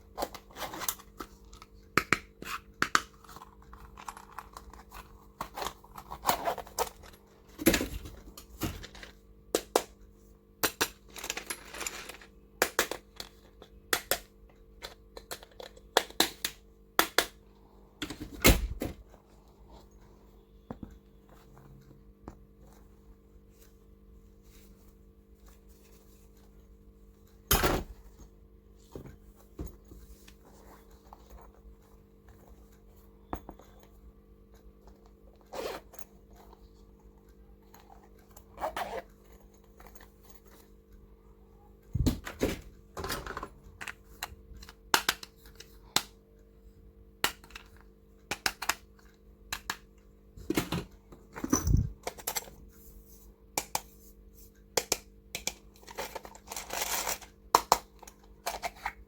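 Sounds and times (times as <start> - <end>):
faint steady hum: 0.0 - 59.0
plastic items clicking and knocking: 10.6 - 17.4, 54.8 - 59.0.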